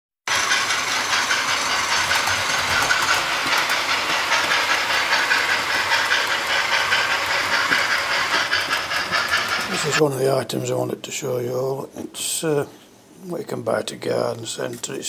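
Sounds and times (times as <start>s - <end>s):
model train hissing and clicking: 0.3s - 10.0s.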